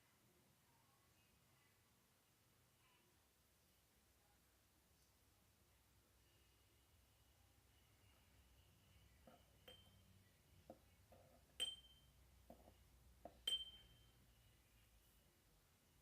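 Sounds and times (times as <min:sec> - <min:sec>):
hand bell ringing: 0:11.6 - 0:12.1, 0:13.4 - 0:14.1.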